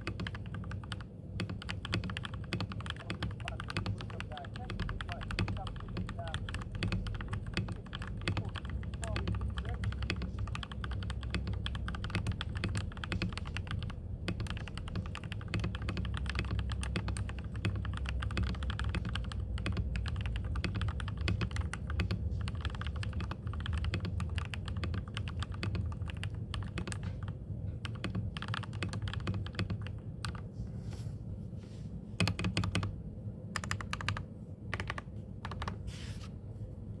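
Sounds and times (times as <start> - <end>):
mechanical keyboard typing: 0.0 - 30.5, 32.2 - 33.0, 33.6 - 35.8.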